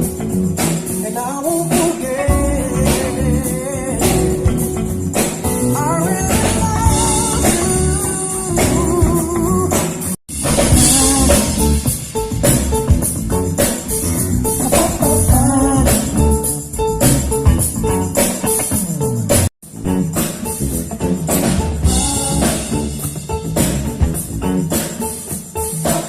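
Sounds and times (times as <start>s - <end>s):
drums with steady beat: 0.0s - 19.5s, 20.1s - 26.0s
guitar: 0.0s - 26.0s
person singing: 0.9s - 10.1s, 10.7s - 11.9s, 14.6s - 16.5s, 21.8s - 23.1s.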